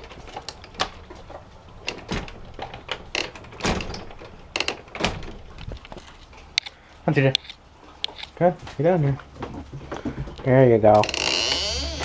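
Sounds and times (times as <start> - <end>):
door clicks and knocks: 0.0 - 5.9.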